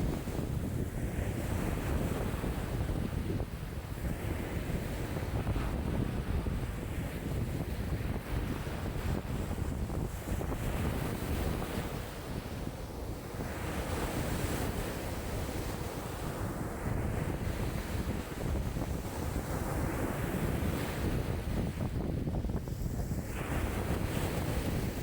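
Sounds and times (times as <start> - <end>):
wind buffeting microphone: 0.0 - 25.0
lake waves washing: 13.4 - 25.0.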